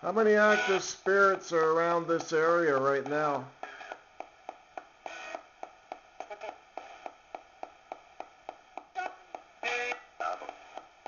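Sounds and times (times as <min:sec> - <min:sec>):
radio static and broadcast fragments: 0:00.2 - 0:02.7, 0:03.6 - 0:04.0, 0:05.0 - 0:05.5, 0:06.2 - 0:07.1, 0:09.0 - 0:10.8
radio scanning clicks: 0:00.4 - 0:11.0.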